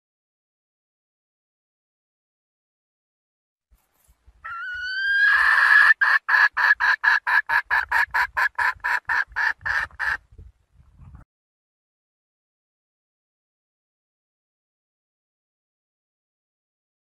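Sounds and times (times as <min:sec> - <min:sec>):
hen calling: 0:04.4 - 0:10.2
hen clucking: 0:04.4 - 0:10.3.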